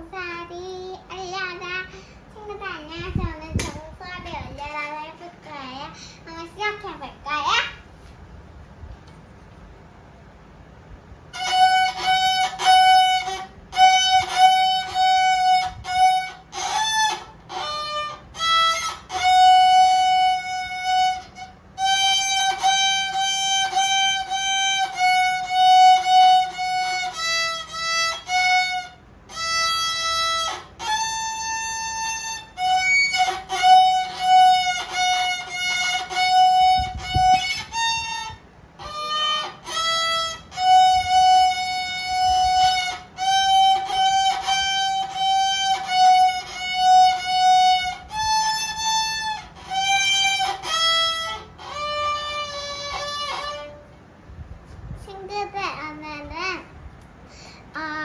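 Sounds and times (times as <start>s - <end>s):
solo violin playing: 11.3s - 54.0s.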